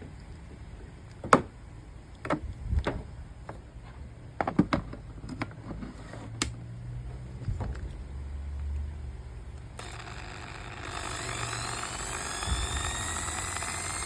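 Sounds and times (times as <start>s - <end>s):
low steady hum: 0.0s - 14.0s
electric drill clicks and knocks: 9.8s - 14.0s.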